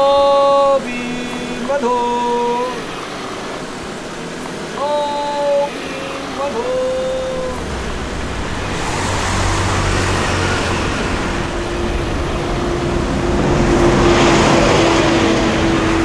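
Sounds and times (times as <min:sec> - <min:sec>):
steady hum: 0:00.0 - 0:16.0
road vehicle noise: 0:00.7 - 0:16.0.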